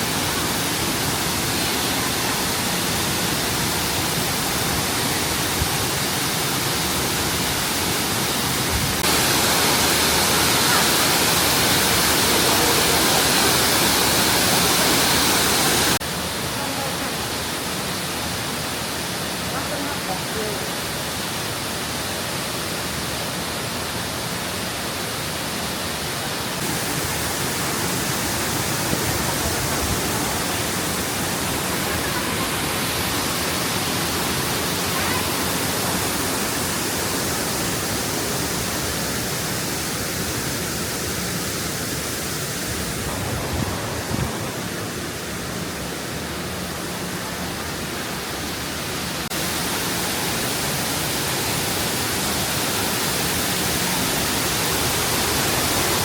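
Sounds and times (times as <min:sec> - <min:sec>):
steady rushing noise: 0:26.6 - 0:50.3.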